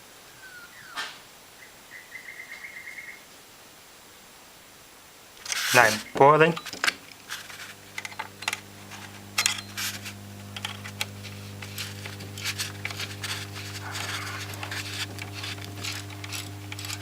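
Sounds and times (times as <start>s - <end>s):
radio humming: 5.4s - 17.0s
sharp clicks and knocks: 5.4s - 17.0s.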